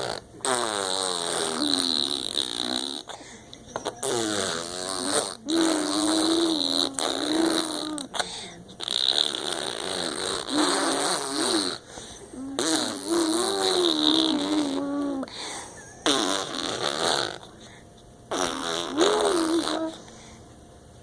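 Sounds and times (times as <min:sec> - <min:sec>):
child imitating car engine: 0:01.2 - 0:03.1, 0:04.1 - 0:08.2, 0:12.4 - 0:15.3, 0:18.4 - 0:20.0.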